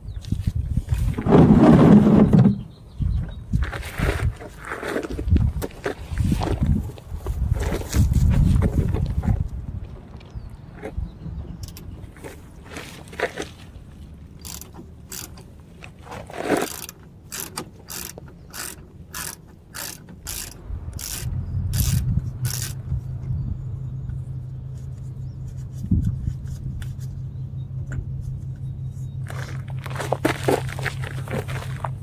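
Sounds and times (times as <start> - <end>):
steady low hum: 5.2 - 32.0
socket ratchet clicking: 16.7 - 22.8.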